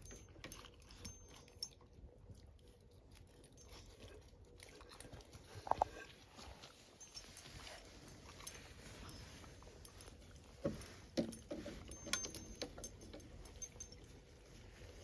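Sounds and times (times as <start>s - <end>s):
dog eating kibble crunches: 0.4s - 8.9s.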